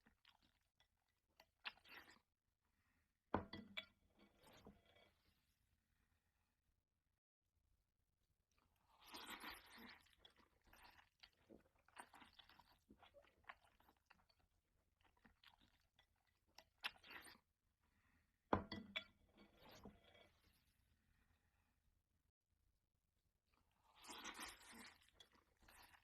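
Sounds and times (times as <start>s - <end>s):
person chewing noodles: 0.0s - 0.7s, 8.7s - 17.4s, 23.6s - 26.0s.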